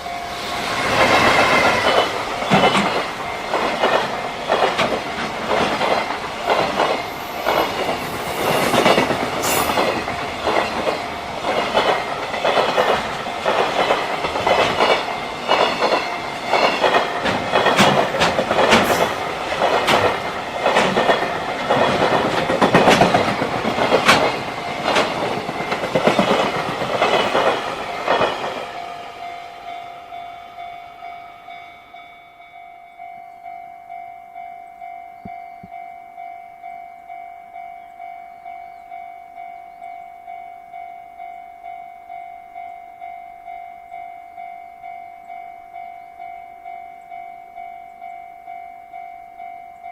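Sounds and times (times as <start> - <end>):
freight train wheels clattering: 0.3 - 29.2.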